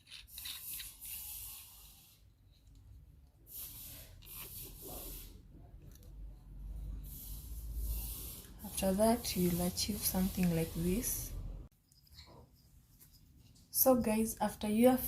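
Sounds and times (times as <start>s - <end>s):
rustling and scraping of parts: 0.0s - 6.2s, 11.8s - 14.2s.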